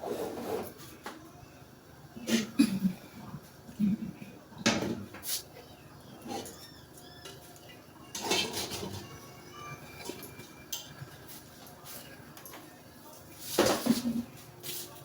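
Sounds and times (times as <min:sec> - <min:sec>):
pots and pans clattering: 0:08.1 - 0:09.0, 0:13.6 - 0:14.2.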